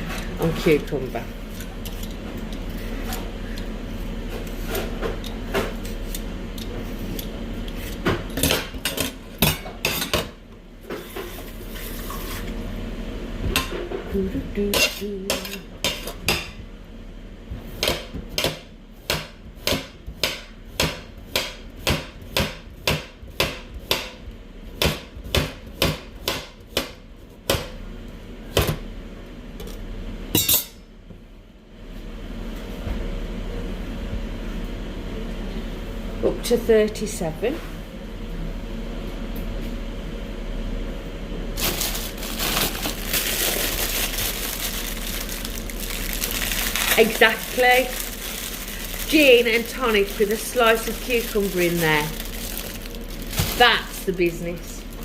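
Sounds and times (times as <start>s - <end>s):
knife chopping on board: 17.8s - 24.2s, 24.8s - 27.7s.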